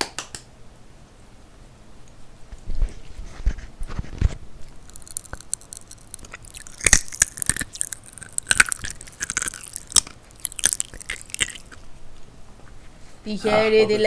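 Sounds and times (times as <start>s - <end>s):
popping candy crackling: 4.2s - 11.9s.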